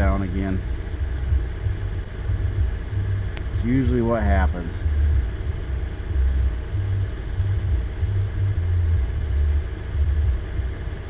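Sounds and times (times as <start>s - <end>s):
car engine idling exhaust rumble: 0.0s - 11.0s.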